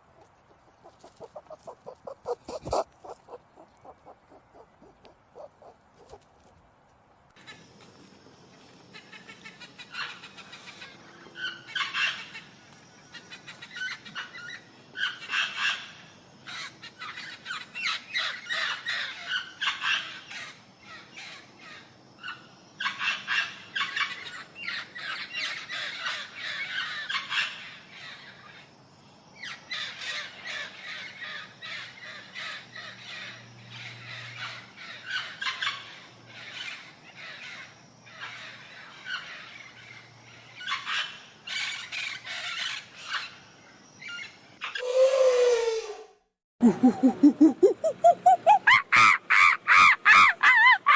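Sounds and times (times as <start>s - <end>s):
birds calling harshly: 0.0s - 6.2s, 46.9s - 50.9s.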